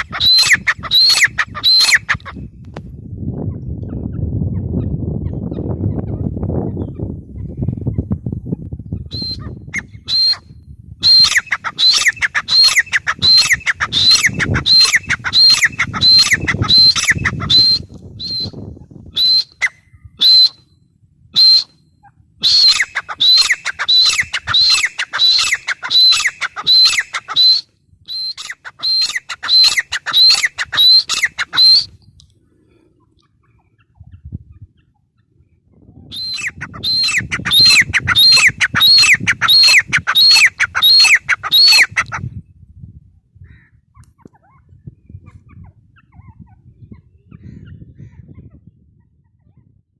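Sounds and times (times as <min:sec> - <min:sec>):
francolin calling: 0:00.0 - 0:02.2, 0:10.0 - 0:10.4, 0:11.0 - 0:18.6, 0:19.2 - 0:20.6, 0:21.4 - 0:21.7, 0:22.4 - 0:31.9, 0:36.2 - 0:41.9.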